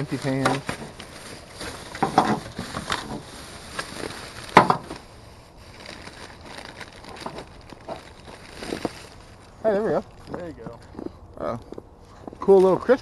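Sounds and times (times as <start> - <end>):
trash bags rustling and knocking: 0.0 - 9.4.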